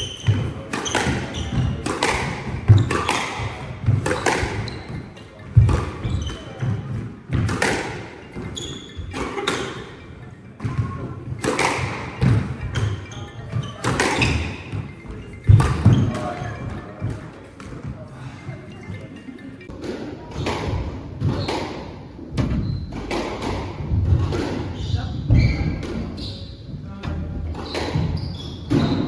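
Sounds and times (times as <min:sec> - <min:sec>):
shoe squeaks on court floor: 0:00.0 - 0:03.6, 0:04.2 - 0:06.7, 0:08.2 - 0:10.0, 0:12.6 - 0:17.0, 0:22.5 - 0:23.0, 0:24.8 - 0:26.7, 0:27.6 - 0:29.0
squash ball cracking off racquets: 0:00.0 - 0:06.7, 0:07.3 - 0:09.9, 0:10.6 - 0:16.4.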